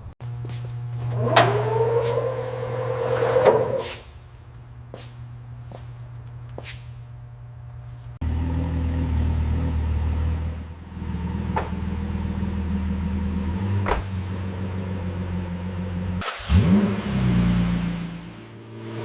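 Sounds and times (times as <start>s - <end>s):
car engine droning: 0.0s - 5.5s, 8.2s - 19.0s.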